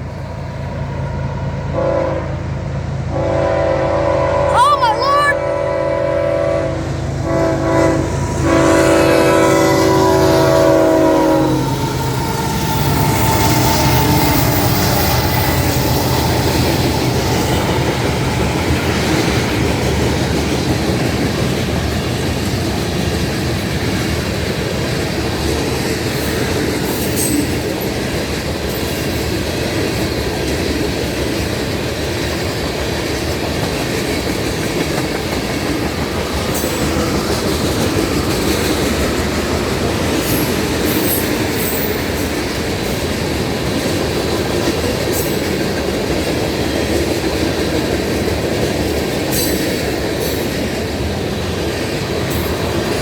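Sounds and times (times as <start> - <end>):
train wheels rumbling: 0.0 - 53.0
locomotive air horn: 1.7 - 2.4, 3.1 - 14.8
clickety-clack over rail joints: 11.5 - 53.0.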